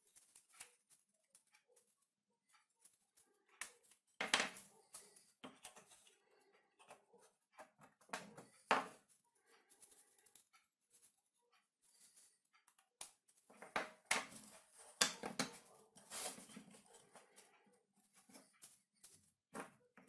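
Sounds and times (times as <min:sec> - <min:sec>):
hands handling small objects: 0:12.9 - 0:19.7.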